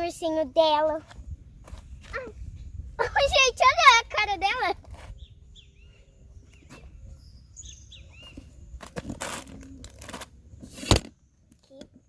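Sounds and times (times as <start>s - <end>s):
faint outdoor background: 0.0s - 12.0s
bird chirping: 5.1s - 8.8s.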